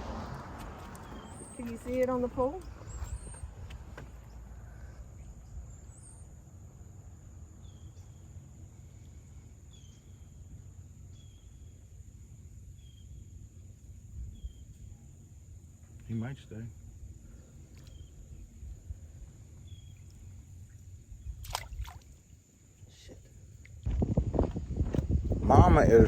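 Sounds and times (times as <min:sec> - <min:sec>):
low rumble: 0:23.9 - 0:26.0.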